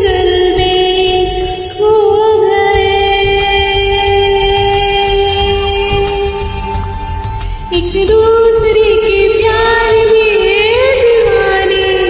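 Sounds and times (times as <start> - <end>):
backing track with steady beat: 0.0 - 12.0.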